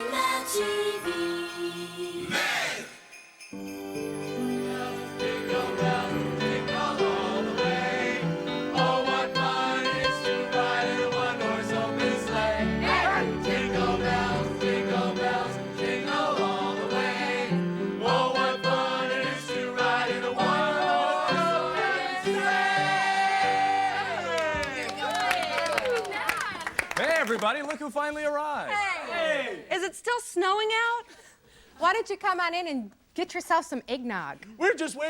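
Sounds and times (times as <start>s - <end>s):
choir singing with instrumental backing: 0.0s - 25.1s.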